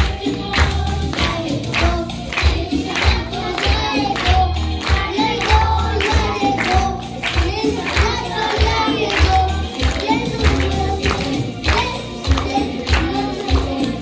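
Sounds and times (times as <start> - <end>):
steady driving beat: 0.0 - 13.3
voices singing together: 0.0 - 14.0.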